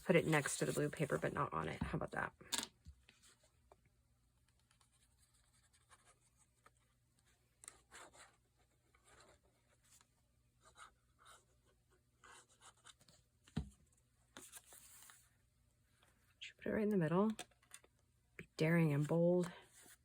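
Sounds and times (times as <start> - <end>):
paper rustling and scraping: 0.0 - 1.5, 14.4 - 15.3.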